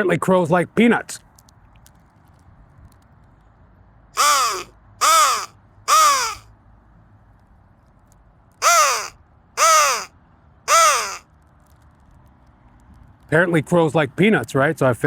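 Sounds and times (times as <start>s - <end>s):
crow call caws: 4.2s - 6.4s, 8.6s - 10.1s, 10.7s - 11.3s.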